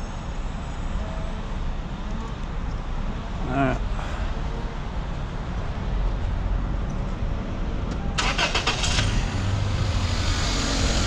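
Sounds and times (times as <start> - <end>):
starter motor cranking clicks: 8.2 - 9.1.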